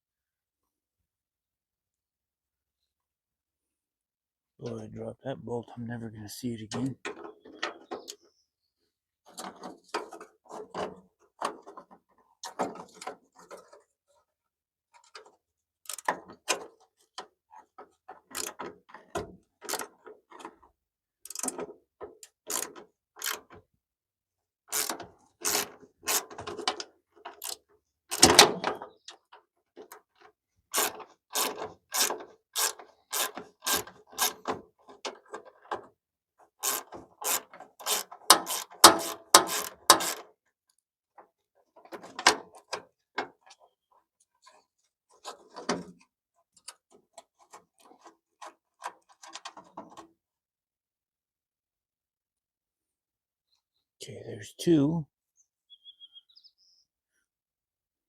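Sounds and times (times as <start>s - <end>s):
ratchet wrench clicking: 24.8s - 26.2s, 30.8s - 34.3s, 36.6s - 40.2s.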